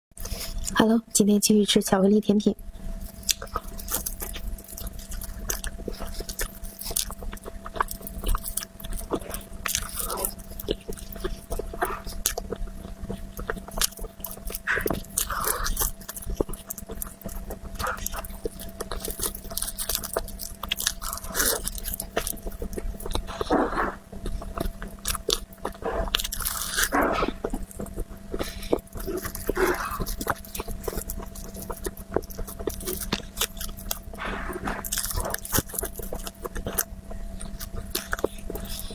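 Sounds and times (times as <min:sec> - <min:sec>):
crunching and chewing: 0:00.2 - 0:00.8, 0:02.8 - 0:38.9
faint steady hum: 0:00.2 - 0:38.9.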